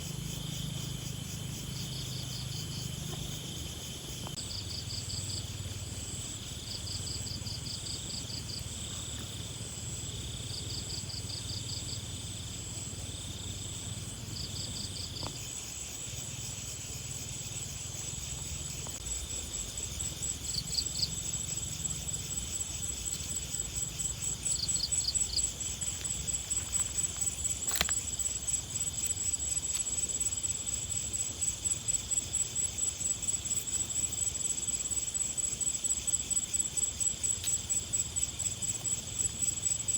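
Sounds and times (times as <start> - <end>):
insects trilling in grass: 0.0 - 39.9.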